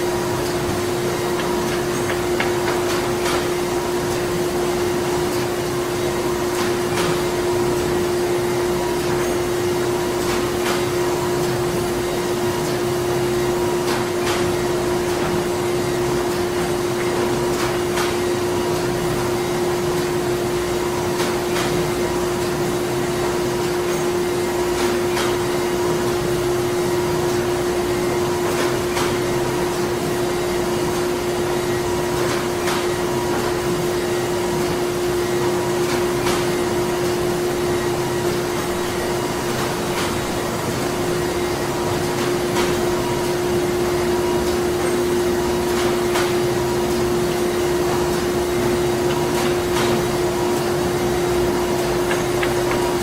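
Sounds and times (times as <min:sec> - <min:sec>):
machinery humming: 0:36.7 - 0:53.0.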